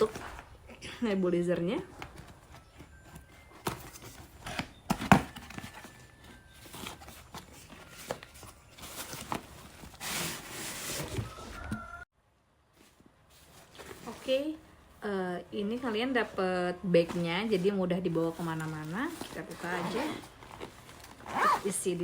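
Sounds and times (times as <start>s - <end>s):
packaging rustling and scraping: 0.0s - 0.8s, 1.6s - 12.0s, 12.8s - 15.0s, 15.6s - 22.0s
packaging knocks and rubbing: 17.0s - 22.0s.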